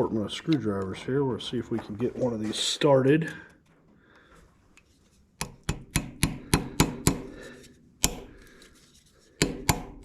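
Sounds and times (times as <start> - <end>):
hammer striking a screwdriver: 5.4 - 7.3, 8.0 - 8.3, 9.4 - 10.0.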